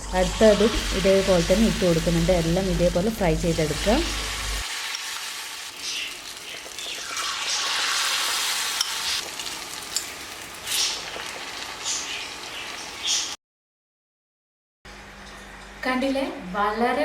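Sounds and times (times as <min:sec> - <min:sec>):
food deep-frying in oil: 0:00.0 - 0:13.4.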